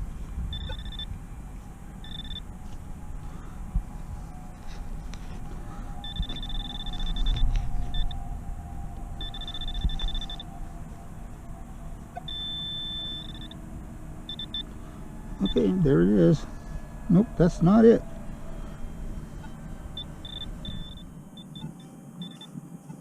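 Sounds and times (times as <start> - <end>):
low rumble: 0.0 - 21.6
metal detector high-pitched beeps: 0.5 - 1.1, 2.0 - 2.5, 6.0 - 8.2, 9.2 - 10.5, 12.2 - 13.6, 14.3 - 14.7, 15.4 - 15.8, 19.4 - 22.5.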